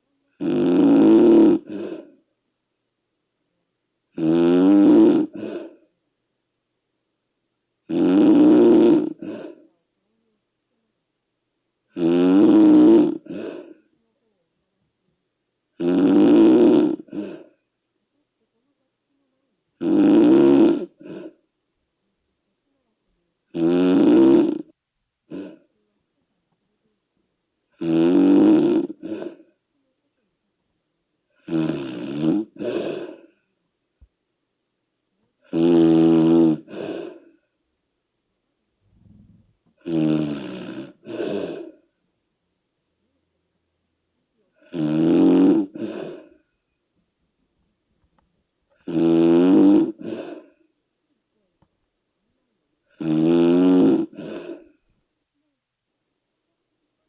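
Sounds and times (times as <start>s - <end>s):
person snoring loudly: 0.4s - 2.1s, 4.2s - 5.8s, 7.9s - 9.6s, 11.9s - 13.8s, 15.8s - 17.5s, 19.8s - 21.4s, 23.5s - 24.7s, 27.8s - 29.5s, 31.4s - 33.4s, 35.5s - 37.3s, 39.0s - 41.8s, 44.6s - 46.3s, 48.8s - 50.6s, 52.9s - 54.7s
soft breath: 38.8s - 39.7s, 50.0s - 50.8s.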